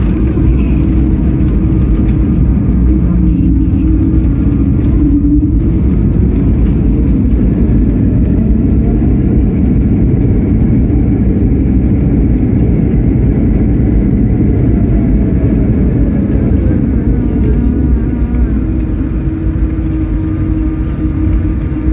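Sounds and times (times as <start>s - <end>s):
jet engine cabin rumble: 0.0s - 21.9s.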